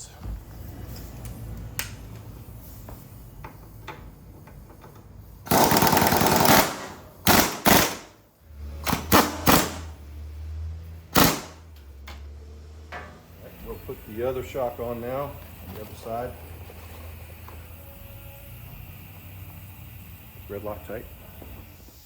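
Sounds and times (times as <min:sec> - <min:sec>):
impact wrench hammering: 0:05.5 - 0:08.2, 0:08.8 - 0:09.9, 0:11.1 - 0:11.7.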